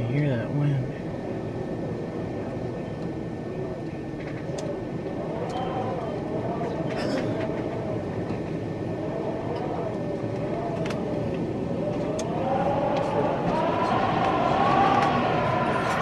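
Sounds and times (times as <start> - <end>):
strong wind rushing: 0.9 - 16.0
distant warning siren wailing: 3.3 - 16.0.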